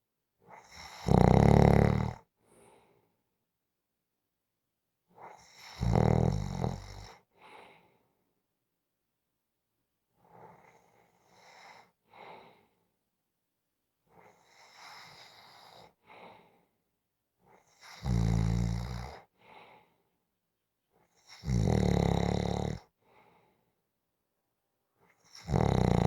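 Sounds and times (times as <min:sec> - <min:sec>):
person snoring: 0:00.7 - 0:02.2, 0:05.6 - 0:07.1, 0:21.4 - 0:22.8, 0:25.4 - 0:26.0.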